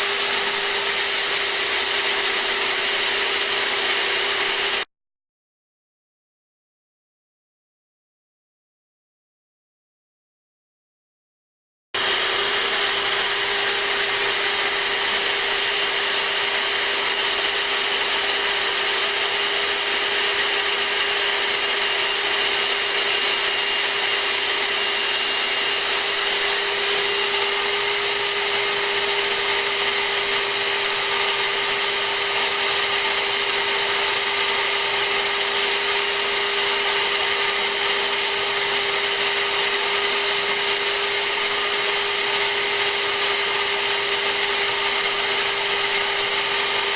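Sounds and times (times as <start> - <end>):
router spindle hum and whine: 0.0 - 4.9, 12.0 - 46.9
shop vacuum rushing: 0.0 - 4.9, 12.0 - 46.9.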